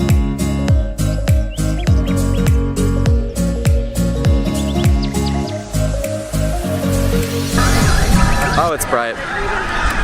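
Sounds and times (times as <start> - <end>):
deep bass kicks: 0.0 - 6.0
held synth notes: 0.0 - 10.0
sharp percussion hits: 7.2 - 8.8.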